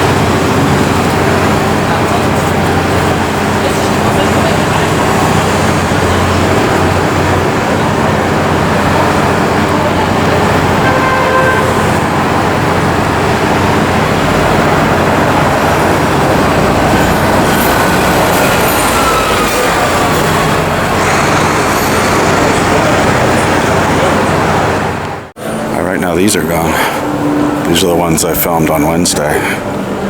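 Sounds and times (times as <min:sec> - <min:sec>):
city street traffic: 0:00.0 - 0:30.0
faint car horn: 0:10.8 - 0:12.0.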